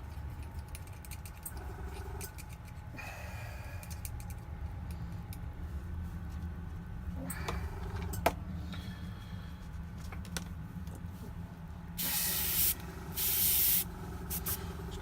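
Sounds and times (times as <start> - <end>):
airbrush hissing: 12.0 - 14.6.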